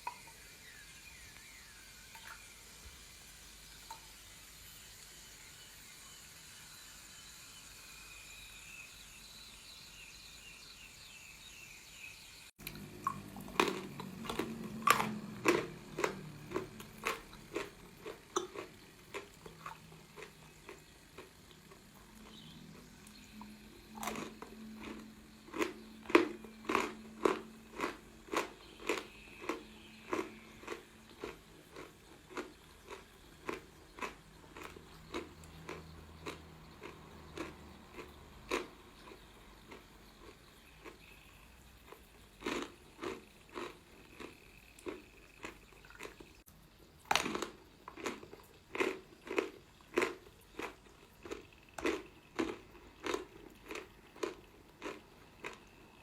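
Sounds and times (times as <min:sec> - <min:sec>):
chewing crunchy chalk: 0:12.7 - 0:46.3, 0:47.1 - 0:56.0.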